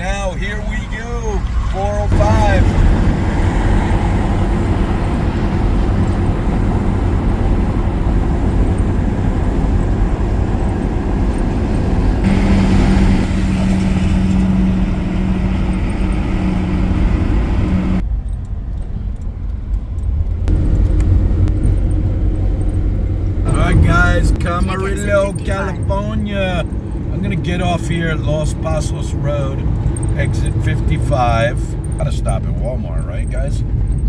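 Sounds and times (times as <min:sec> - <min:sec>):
vehicle road rumble: 0:00.0 - 0:34.0
steady drone: 0:12.2 - 0:18.0.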